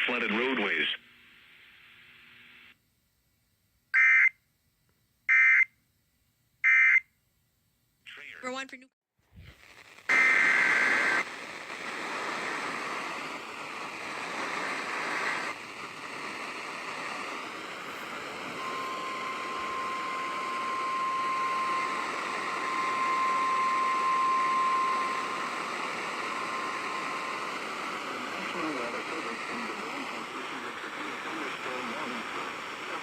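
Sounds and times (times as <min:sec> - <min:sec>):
radio static hissing: 0:00.0 - 0:02.8, 0:09.3 - 0:33.0
steady warning alarm tone: 0:18.5 - 0:28.4.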